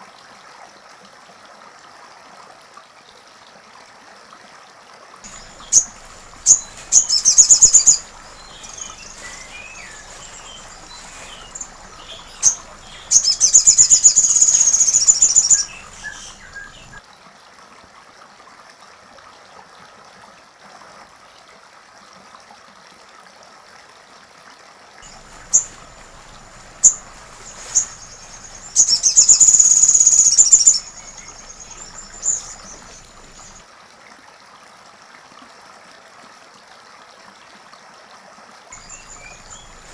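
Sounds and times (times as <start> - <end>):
faint background hiss: 5.3 - 17.0, 25.0 - 33.7, 38.8 - 39.9
songbird chips and trills: 5.3 - 17.0, 25.0 - 33.6, 38.8 - 39.9.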